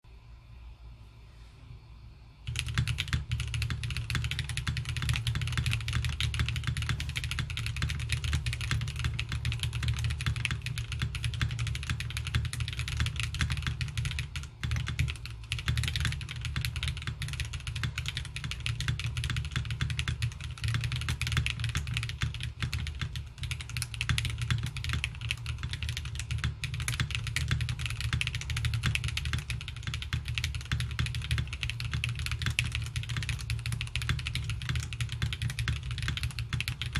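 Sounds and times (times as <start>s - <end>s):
fast typing on mechanical keyboard: 2.5s - 36.9s.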